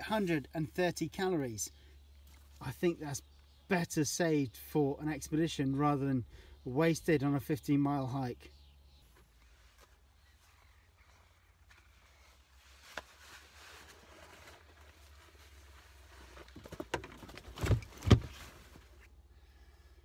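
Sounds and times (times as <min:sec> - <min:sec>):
handling and rustling: 0:09.0 - 0:19.2
knocks and loud thumps: 0:16.6 - 0:18.4.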